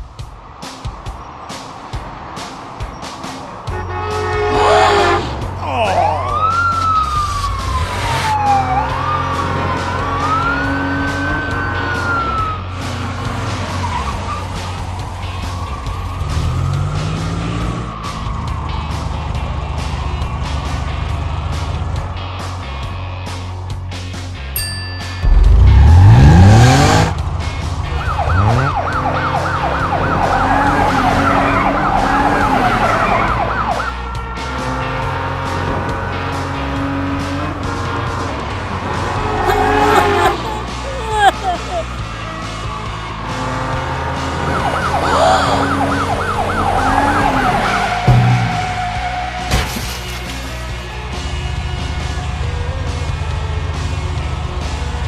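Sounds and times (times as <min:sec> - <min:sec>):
cartoon siren wailing: 0:05.8 - 0:12.5, 0:39.5 - 0:41.8, 0:44.8 - 0:48.0
siren wailing: 0:05.9 - 0:12.7, 0:27.9 - 0:34.6, 0:44.4 - 0:49.4.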